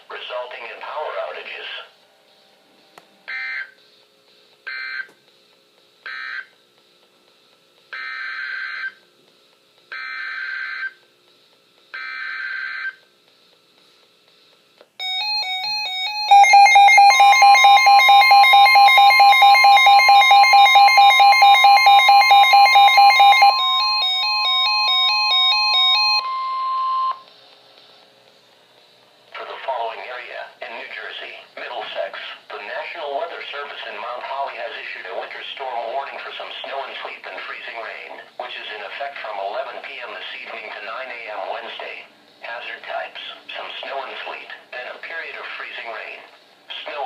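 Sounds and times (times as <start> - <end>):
steady warning alarm tone: 4.7 - 5.1, 6.1 - 6.5, 8.0 - 9.0, 9.9 - 11.0, 15.0 - 27.3
rapidly pulsing electronic beep: 15.0 - 27.2
data bursts: 16.1 - 27.2.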